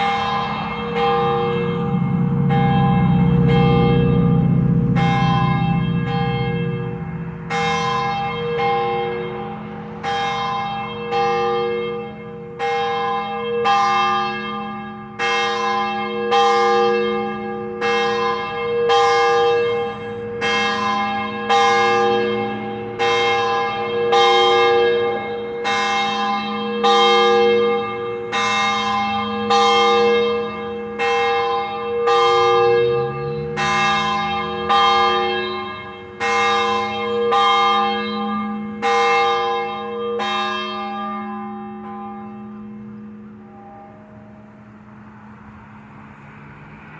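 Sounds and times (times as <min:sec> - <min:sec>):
church bell ringing: 0:00.0 - 0:46.0
low hum: 0:00.5 - 0:09.7.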